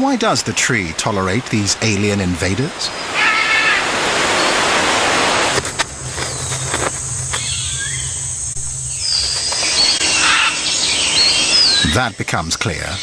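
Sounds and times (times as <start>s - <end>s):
high insect buzz: 3.1s - 11.9s
low steady hum: 4.8s - 12.7s
whistled bird calls: 6.3s - 12.1s.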